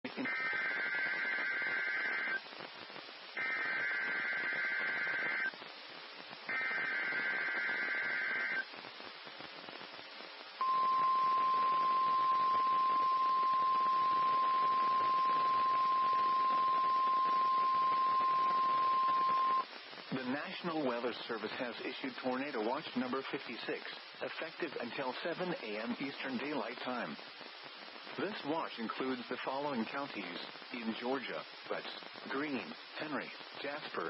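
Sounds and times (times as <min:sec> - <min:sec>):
radio hiss: 0:00.0 - 0:34.0
steady alarm tone: 0:10.6 - 0:19.6
warbling digital data bursts: 0:10.6 - 0:19.6.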